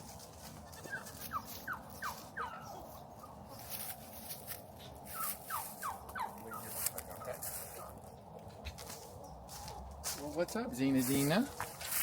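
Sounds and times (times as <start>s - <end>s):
turkey gobbling: 0.5s - 3.5s, 5.0s - 8.1s.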